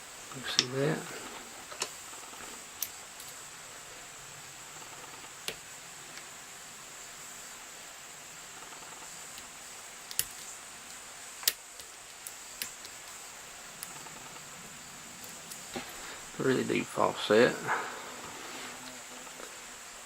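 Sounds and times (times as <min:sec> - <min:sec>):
faint hiss: 0:00.0 - 0:20.0
lock pick clicks: 0:10.1 - 0:13.2.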